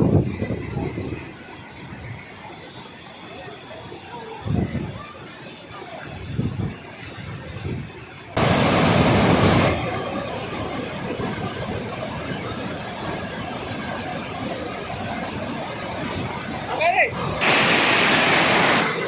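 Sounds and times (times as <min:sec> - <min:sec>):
faint voices: 0:00.3 - 0:08.4
loud rush of water: 0:05.6 - 0:19.0
waterfall rushing: 0:08.4 - 0:19.0.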